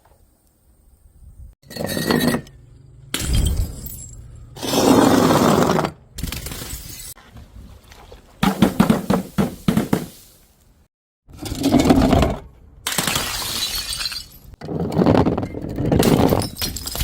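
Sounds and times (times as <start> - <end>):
glass bottles shattering: 3.2 - 4.3, 12.9 - 14.6, 15.6 - 17.0
sharp glass clinks: 3.2 - 4.5.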